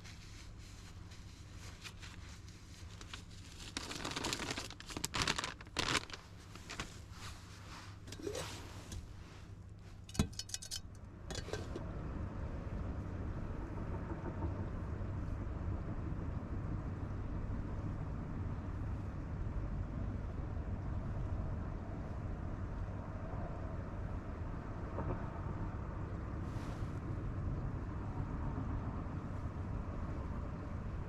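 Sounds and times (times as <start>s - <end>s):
rustling and crinkling handling: 0.0s - 11.8s.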